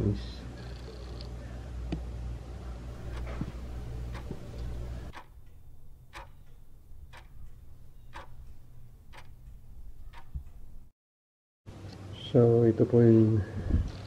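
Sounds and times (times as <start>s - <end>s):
low hum: 2.6s - 10.9s
clock ticking: 2.9s - 10.9s.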